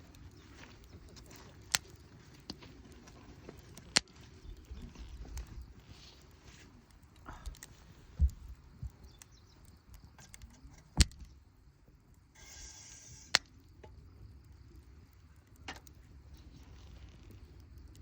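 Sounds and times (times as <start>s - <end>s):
campfire pops and cracks: 0.0s - 18.0s
brief hiss: 12.4s - 13.4s.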